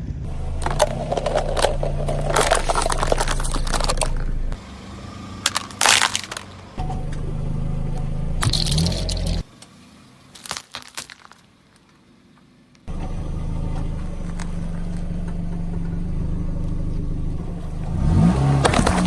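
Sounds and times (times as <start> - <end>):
car engine running: 0.0 - 19.0
objects crunching under wheels: 0.3 - 19.0
sharp cracks: 5.4 - 6.8, 8.4 - 9.7.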